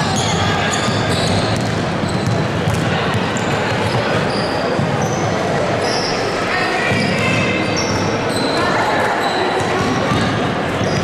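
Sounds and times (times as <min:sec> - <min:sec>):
murmur of voices: 0:00.0 - 0:11.0
shoe squeaks: 0:00.1 - 0:02.4, 0:03.4 - 0:06.3, 0:06.9 - 0:09.9
basketball bouncing on court: 0:00.2 - 0:05.1, 0:09.6 - 0:11.0.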